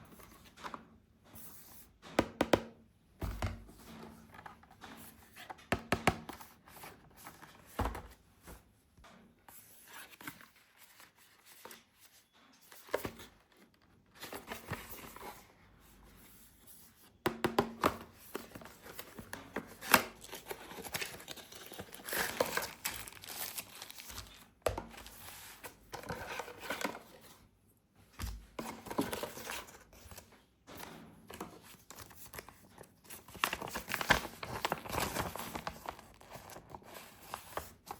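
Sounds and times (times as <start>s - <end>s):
plastic and cardboard crinkling: 17.7s - 27.4s, 31.3s - 37.9s.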